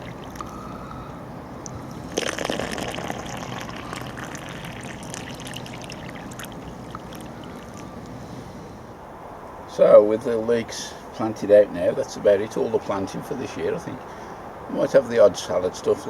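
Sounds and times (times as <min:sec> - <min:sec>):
water pouring into soil: 0:02.1 - 0:07.9.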